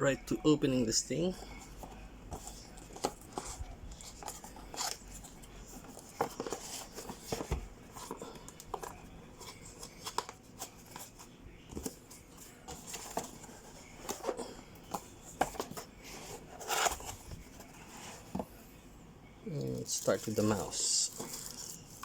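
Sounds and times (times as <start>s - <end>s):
cardboard packaging clicks and rustles: 1.7s - 18.5s.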